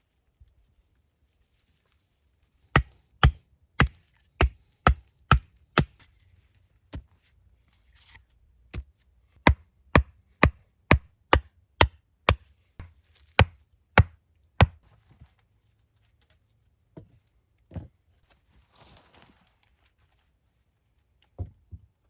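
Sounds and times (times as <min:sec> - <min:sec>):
axe chopping wood: 0:02.8 - 0:06.0, 0:08.8 - 0:12.4, 0:13.4 - 0:14.8.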